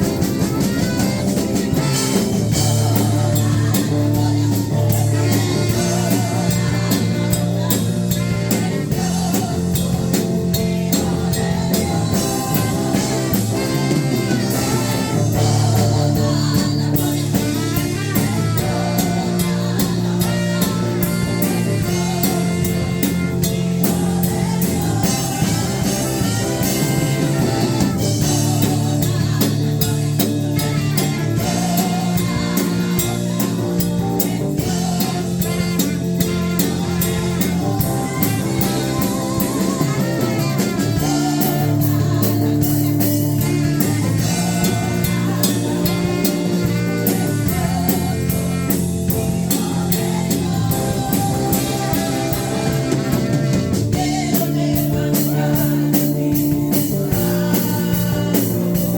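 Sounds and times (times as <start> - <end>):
drum kit beat: 0.0 - 58.9
guitar: 0.0 - 58.9
person singing: 0.0 - 58.9
worship band playing: 0.0 - 58.9.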